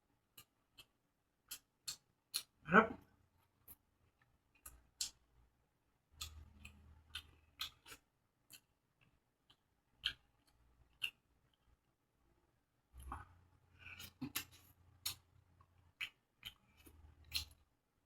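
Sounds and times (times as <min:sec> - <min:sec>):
mouth chewing food: 0:00.3 - 0:02.6, 0:03.6 - 0:05.2, 0:06.2 - 0:11.8, 0:13.0 - 0:17.7.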